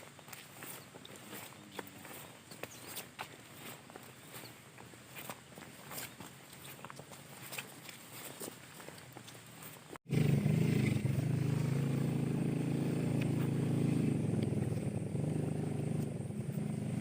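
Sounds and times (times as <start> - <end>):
engine running steadily: 10.1 - 17.0.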